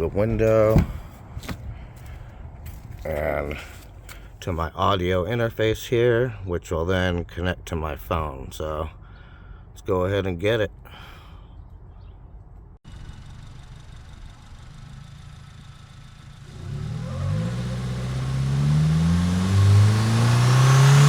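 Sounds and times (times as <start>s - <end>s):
car engine accelerating: 12.9s - 21.0s.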